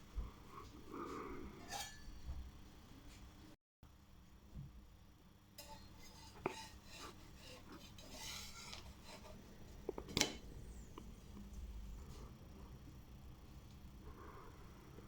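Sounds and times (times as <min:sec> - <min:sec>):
utensils scraping cookware: 0:01.6 - 0:02.3, 0:05.6 - 0:09.5.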